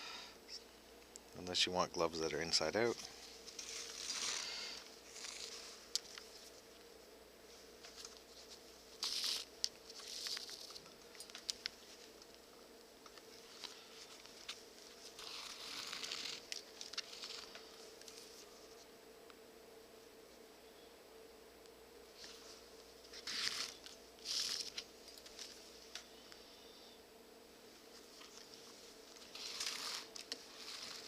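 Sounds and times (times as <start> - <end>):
thread pulled through leather: 3.3 - 6.6, 13.4 - 18.8, 27.9 - 31.0.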